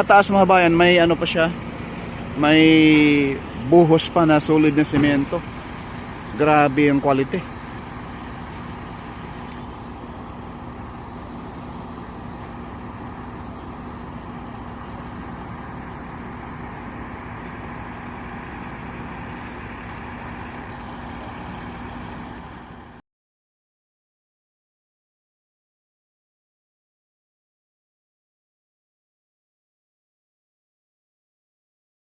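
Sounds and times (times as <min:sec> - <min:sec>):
road traffic noise: 0:00.0 - 0:23.0.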